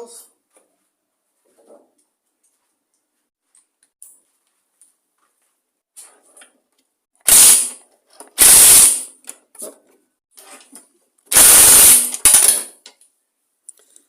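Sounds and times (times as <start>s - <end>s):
impact wrench hammering: 7.3s - 7.8s, 8.4s - 9.2s, 11.3s - 12.7s.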